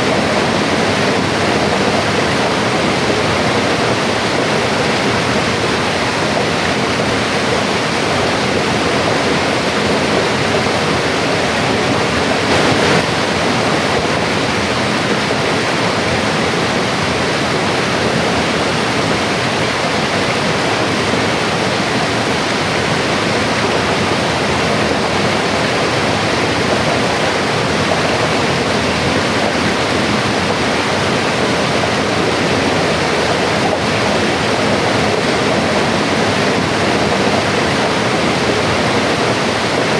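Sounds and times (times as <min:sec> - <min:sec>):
river water rushing over rocks: 0:00.0 - 0:39.9.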